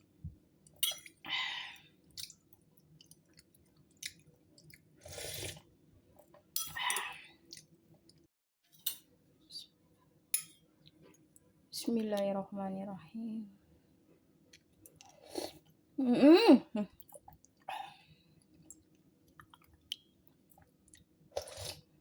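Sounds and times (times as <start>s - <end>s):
person chewing: 18.6s - 21.9s.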